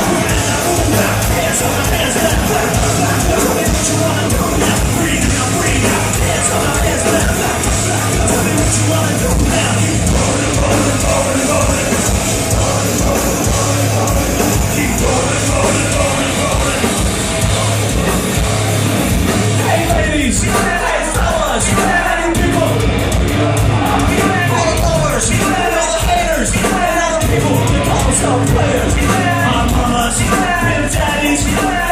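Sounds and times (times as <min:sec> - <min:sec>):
person singing: 0:00.0 - 0:18.2
rap-metal band playing live: 0:00.0 - 0:31.9.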